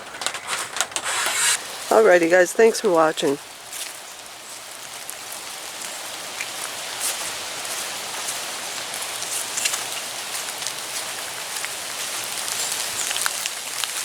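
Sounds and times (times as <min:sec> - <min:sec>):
rain and snow falling: 0:00.0 - 0:14.0.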